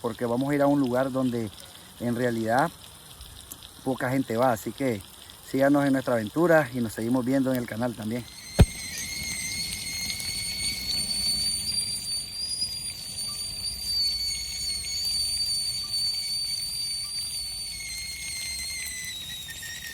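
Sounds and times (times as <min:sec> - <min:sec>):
high-pitched whistle: 0:08.1 - 0:19.9.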